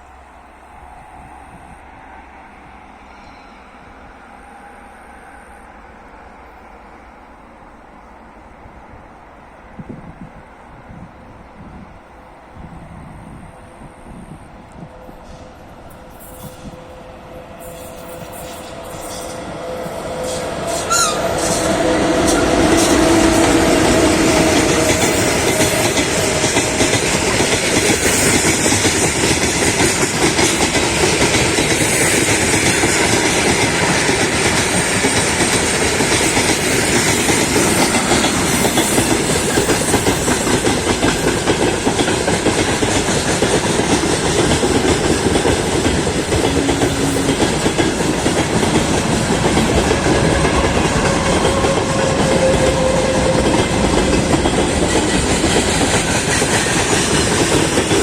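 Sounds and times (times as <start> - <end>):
freight train wheels rumbling: 0.0 - 58.0
wheels clacking over rail joints: 17.8 - 58.0.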